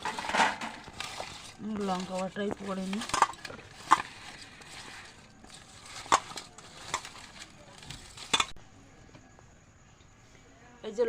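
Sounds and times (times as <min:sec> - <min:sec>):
kitchen utensils clinking: 0:00.0 - 0:08.6.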